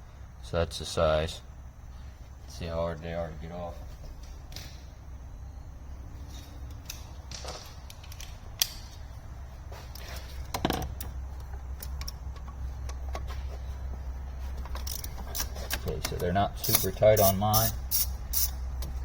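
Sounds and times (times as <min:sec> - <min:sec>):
steady low hum: 0:00.0 - 0:19.0
socket wrench clicking: 0:14.8 - 0:18.6.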